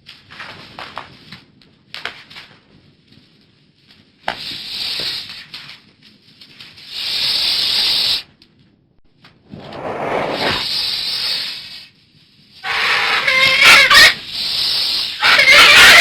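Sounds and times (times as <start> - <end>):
bird harsh hissing calls: 4.3 - 5.4, 6.8 - 8.3, 10.3 - 11.9, 12.6 - 16.0.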